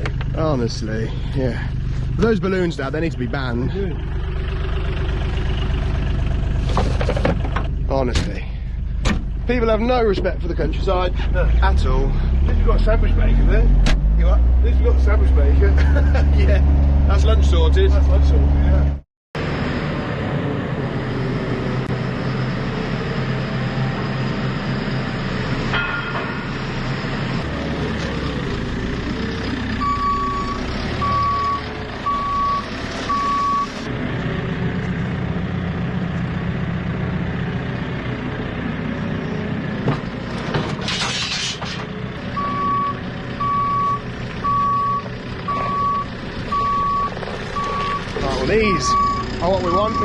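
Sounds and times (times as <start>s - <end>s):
diesel engine running: 0.0s - 50.0s
reversing alarm beeping: 29.8s - 33.8s, 42.4s - 50.0s.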